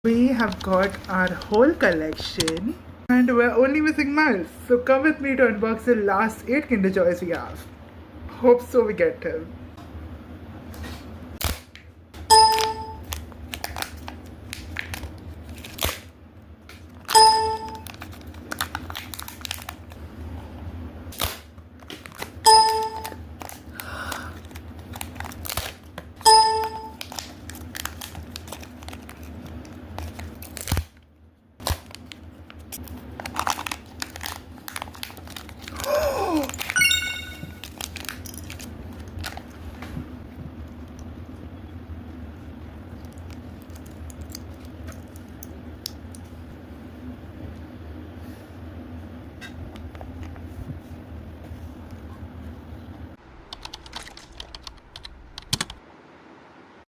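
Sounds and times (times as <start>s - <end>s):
short ringing tone: 12.3s - 13.1s, 17.1s - 17.9s, 22.4s - 23.2s, 26.2s - 27.0s, 36.8s - 37.7s
foil wrappers crinkling and tearing: 13.0s - 16.1s, 17.8s - 20.0s, 21.2s - 22.4s, 23.3s - 26.1s, 26.9s - 31.0s, 31.6s - 36.8s, 37.6s - 39.8s, 42.9s - 45.4s.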